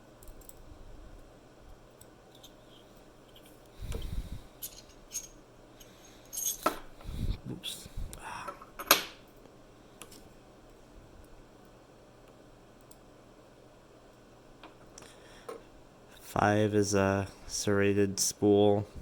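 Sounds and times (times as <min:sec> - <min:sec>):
metal pins clinking on hard surface: 0:04.6 - 0:05.4, 0:06.2 - 0:06.9.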